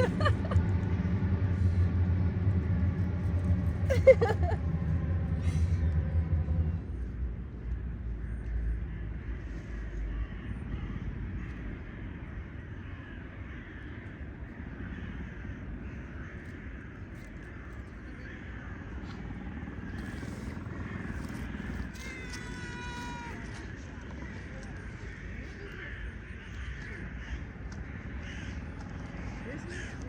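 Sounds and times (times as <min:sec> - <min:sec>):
birds calling: 0:00.0 - 0:00.6
low rumble: 0:00.0 - 0:13.4.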